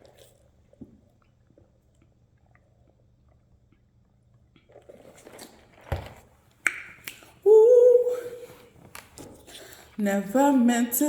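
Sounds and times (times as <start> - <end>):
faint chewing of snack: 0.0 - 5.8.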